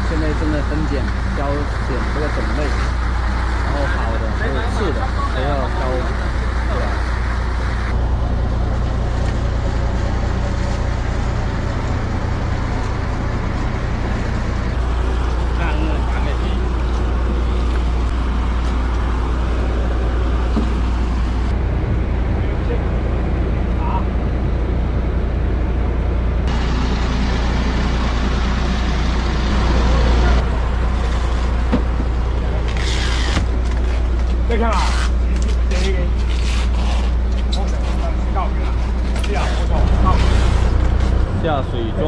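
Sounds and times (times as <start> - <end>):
rushing noise: 0.0 - 33.6
boat engine droning: 0.0 - 42.0.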